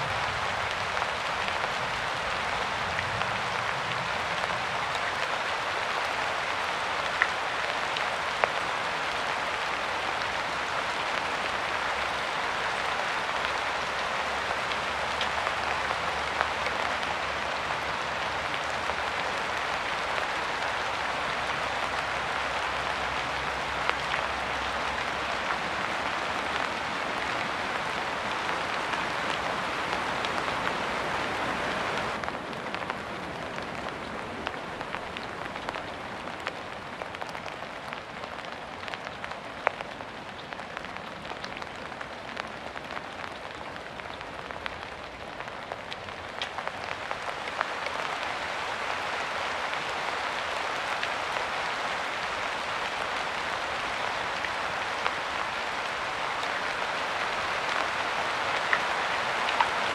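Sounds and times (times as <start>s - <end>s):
steady rain falling: 0.0s - 59.9s.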